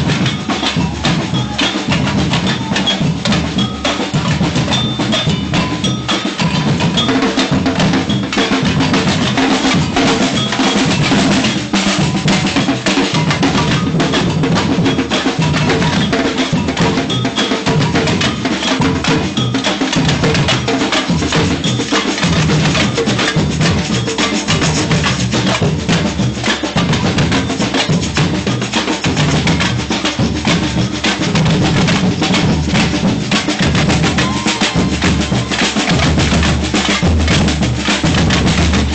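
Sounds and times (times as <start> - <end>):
surdo bass drums: 0.0 - 3.6, 30.3 - 38.9
crisp snare drums: 0.0 - 38.9.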